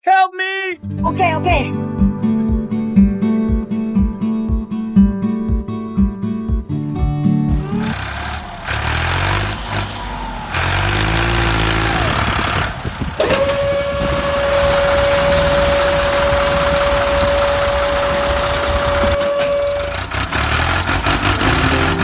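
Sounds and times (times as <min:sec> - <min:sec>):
truck engine running: 0:06.4 - 0:22.0
steady whining tone: 0:07.5 - 0:22.0.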